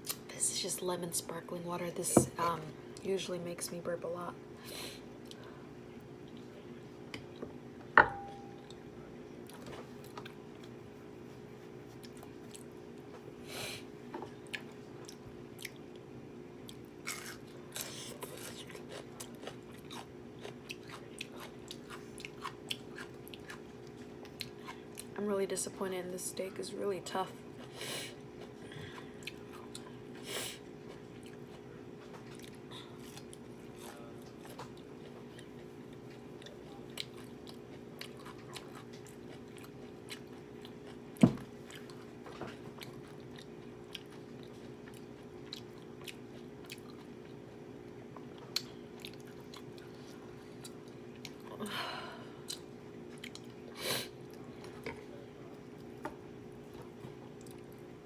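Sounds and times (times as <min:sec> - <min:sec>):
steady low hum: 0:00.0 - 0:58.0
person chewing food: 0:11.8 - 0:13.2, 0:14.3 - 0:25.2, 0:27.5 - 0:51.6, 0:52.4 - 0:56.0, 0:56.6 - 0:57.9.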